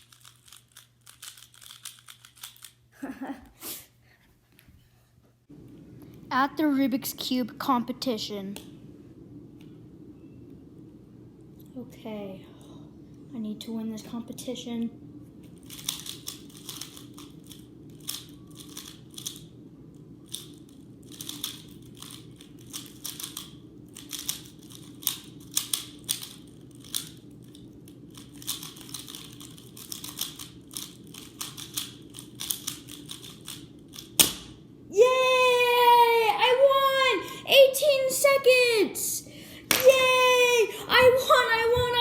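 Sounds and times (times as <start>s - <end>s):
puzzle cube clicking: 0.1s - 2.8s.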